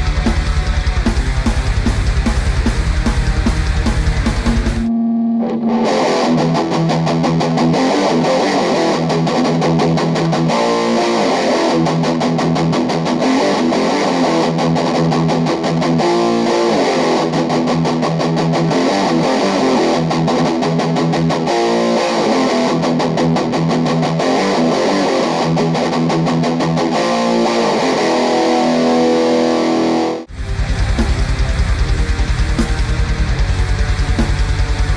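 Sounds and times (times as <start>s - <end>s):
distorted electric guitar run: 0.0s - 34.9s.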